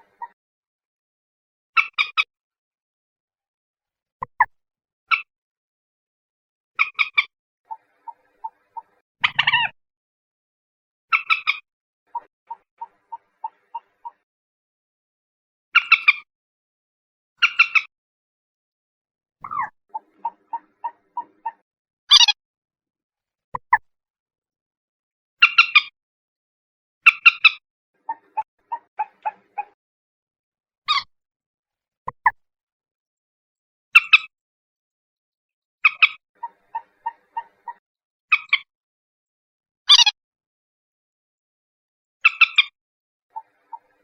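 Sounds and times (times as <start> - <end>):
moorhen calling: 19.4 - 22.3, 35.8 - 37.8.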